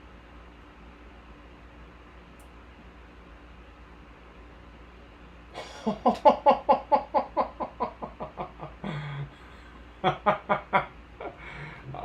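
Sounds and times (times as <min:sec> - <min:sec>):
man laughing excitedly: 0:05.6 - 0:12.0.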